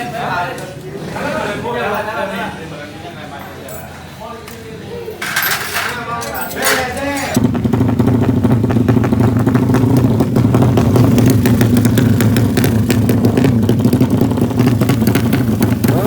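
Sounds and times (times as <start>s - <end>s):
motorcycle engine running loud: 7.4s - 16.0s.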